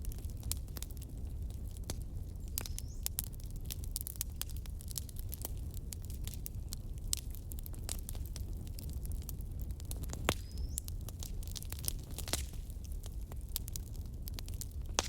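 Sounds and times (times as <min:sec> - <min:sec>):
logs crackling and popping: 0:00.0 - 0:15.0
low rumble of flames: 0:00.0 - 0:15.0.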